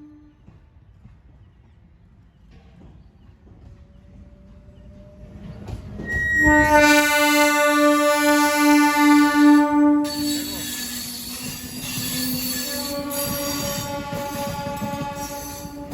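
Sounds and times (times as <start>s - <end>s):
train rumbling: 0.0s - 15.9s
train horn blast: 6.0s - 11.3s, 12.3s - 15.9s.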